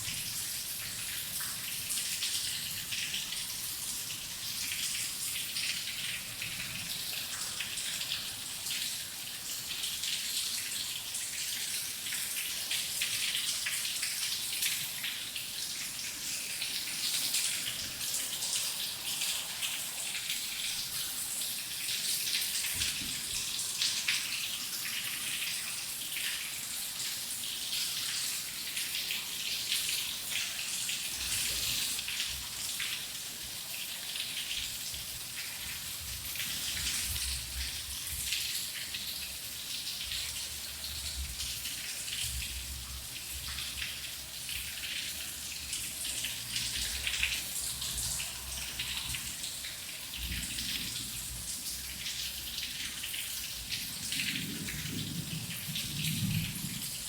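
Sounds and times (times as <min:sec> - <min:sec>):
heavy rain falling: 0:50.2 - 0:57.0.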